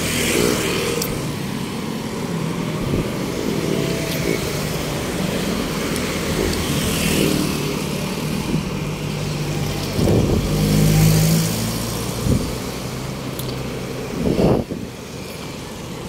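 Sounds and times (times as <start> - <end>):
steady road noise: 0.0 - 16.0
vehicle engine passing: 3.8 - 13.2.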